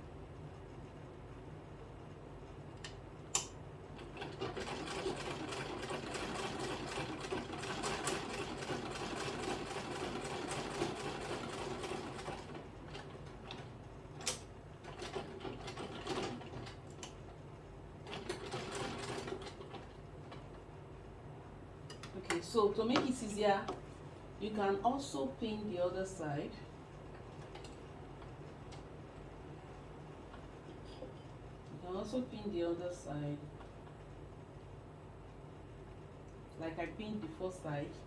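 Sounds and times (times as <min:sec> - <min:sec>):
sharp click: 0:02.8 - 0:03.6
sewing machine stitching: 0:04.0 - 0:13.7, 0:18.0 - 0:20.4.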